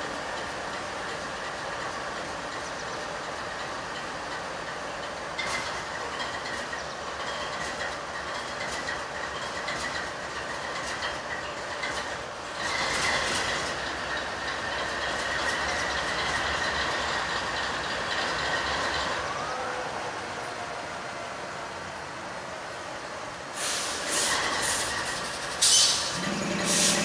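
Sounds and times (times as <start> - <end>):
wheels clicking over rail joints: 0.0 - 19.6, 23.9 - 27.0
freight train cars rolling past: 0.0 - 27.0
high wheel squeal: 23.6 - 27.0.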